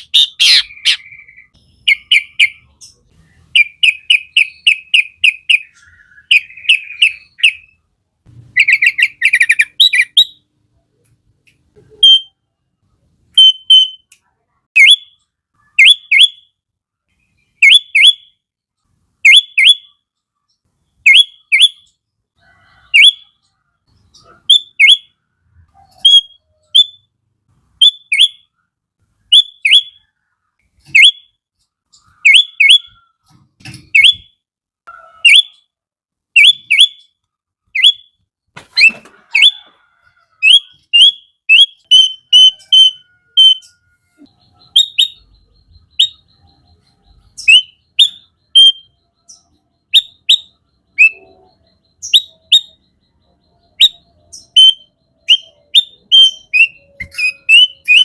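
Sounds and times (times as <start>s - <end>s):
bird whistling downward notes: 3.5s - 7.8s, 8.6s - 10.4s, 13.3s - 14.1s, 27.8s - 28.5s, 29.3s - 30.1s, 32.1s - 33.2s, 33.9s - 35.6s, 37.8s - 58.0s.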